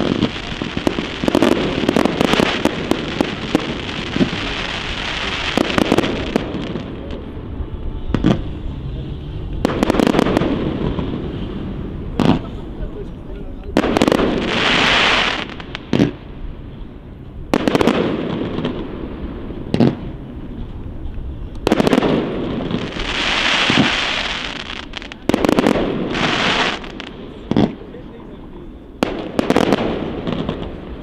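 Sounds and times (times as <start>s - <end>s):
firework shells bursting: 0.0s - 16.4s
firework crackling hiss: 0.0s - 31.0s.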